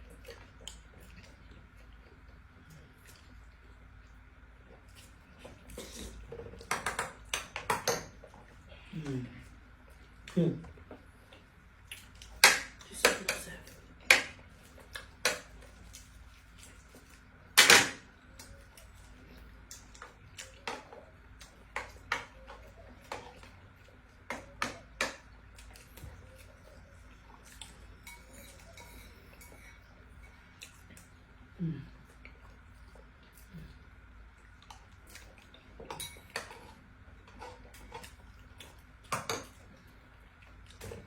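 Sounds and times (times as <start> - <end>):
spoons and dishes clinking: 28.0 - 29.9.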